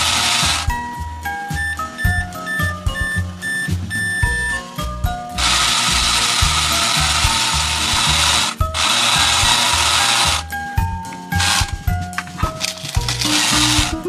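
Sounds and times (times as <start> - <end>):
toy blender whirring: 0.0 - 0.7, 5.4 - 10.5, 11.4 - 11.8, 12.6 - 14.0
background music with steady beat: 0.0 - 14.0.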